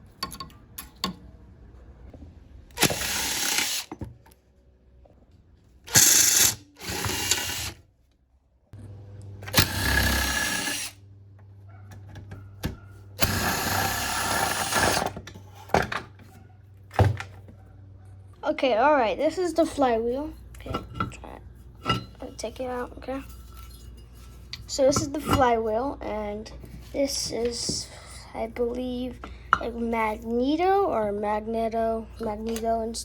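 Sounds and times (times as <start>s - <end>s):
power drill running: 2.8s - 3.9s, 5.9s - 7.8s, 9.4s - 11.0s, 13.2s - 15.2s.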